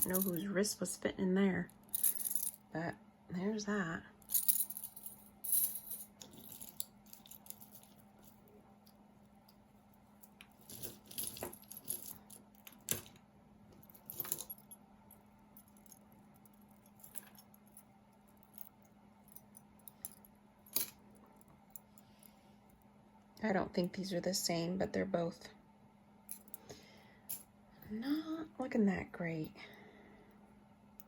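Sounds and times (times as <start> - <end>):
metal jewelry clinking: 0.0 - 0.5, 1.7 - 2.7, 4.2 - 22.0
faint steady hum: 0.0 - 31.0.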